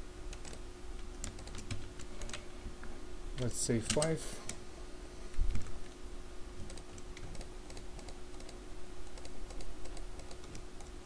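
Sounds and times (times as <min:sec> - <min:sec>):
faint steady hum: 0:00.0 - 0:11.0
keyboard typing: 0:00.3 - 0:00.6, 0:01.2 - 0:02.4, 0:06.6 - 0:10.9.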